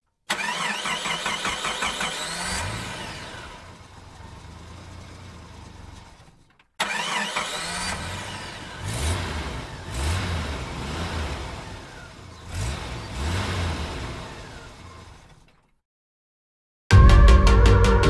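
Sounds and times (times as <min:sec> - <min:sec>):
engine starter whine: 0:00.3 - 0:04.4, 0:05.9 - 0:09.0.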